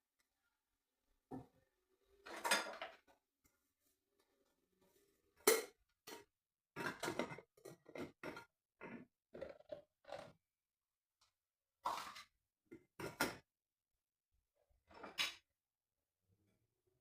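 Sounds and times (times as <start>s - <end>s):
household objects clattering: 5.4s - 10.4s.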